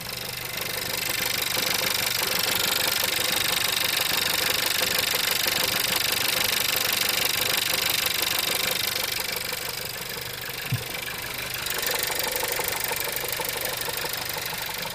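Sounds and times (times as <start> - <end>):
car engine running: 0.0 - 14.9
short low thump: 10.6 - 11.0
rapid regular flywheel knock: 10.6 - 11.2.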